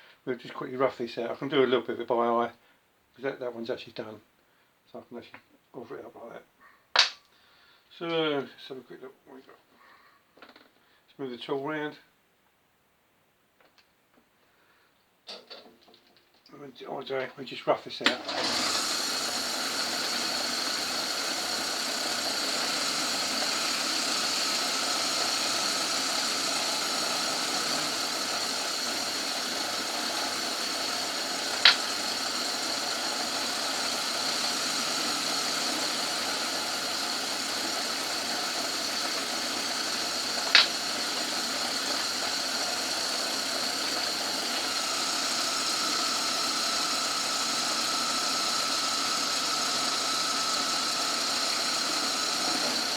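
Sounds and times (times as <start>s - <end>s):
short sharp clicks: 7.0s - 7.3s
lathe running: 18.1s - 52.9s.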